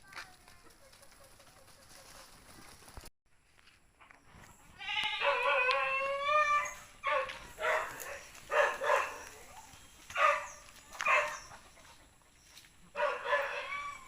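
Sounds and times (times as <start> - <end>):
goat bleating: 4.8 - 5.4.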